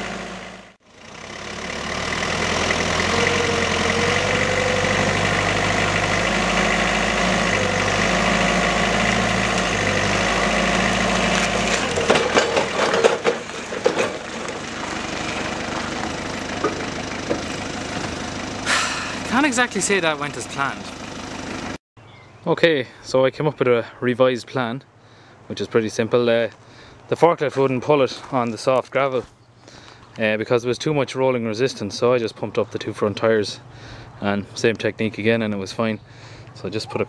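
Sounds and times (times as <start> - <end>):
forklift engine running: 0.0 - 21.8
clanks and knocks: 11.3 - 14.7, 15.7 - 18.2.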